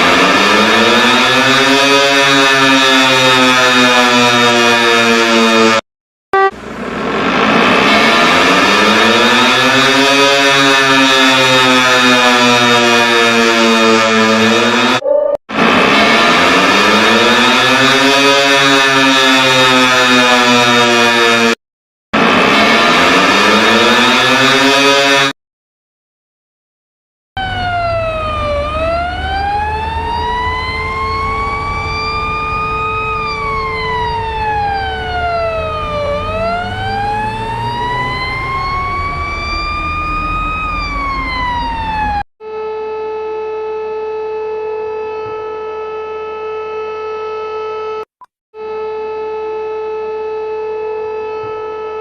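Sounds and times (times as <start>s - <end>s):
emergency siren wailing: 0.0s - 5.8s, 6.4s - 21.6s, 22.2s - 25.3s, 27.4s - 52.0s
steady chord of alert tones: 30.0s - 35.2s.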